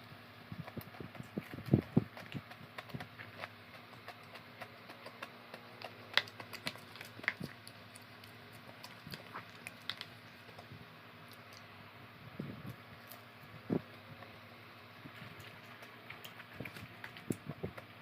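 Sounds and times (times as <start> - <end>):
electric fan humming: 0.0 - 18.0
eating mouth sounds: 0.5 - 11.7, 15.0 - 18.0.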